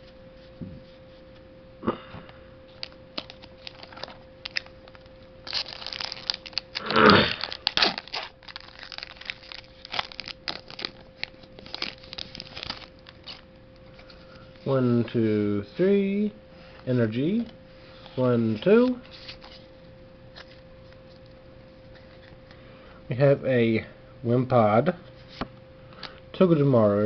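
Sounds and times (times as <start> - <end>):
faint steady hum: 0.0 - 27.0
foil pack crinkling and tearing: 2.7 - 14.7.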